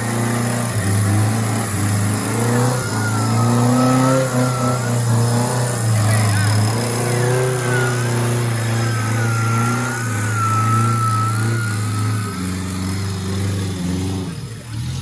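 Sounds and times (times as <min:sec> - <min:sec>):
off-road vehicle engine running: 0:00.0 - 0:15.0
thin high whine: 0:06.7 - 0:13.7.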